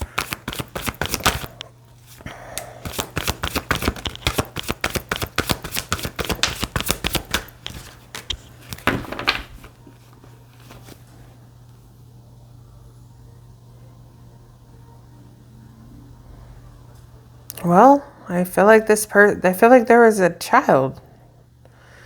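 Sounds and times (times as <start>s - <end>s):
cards being shuffled: 0.0s - 11.1s.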